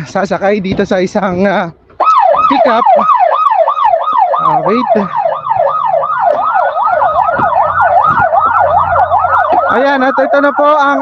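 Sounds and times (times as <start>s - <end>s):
vehicle engines humming: 0.0s - 11.0s
second siren: 2.0s - 11.0s
siren yelping: 2.0s - 11.0s.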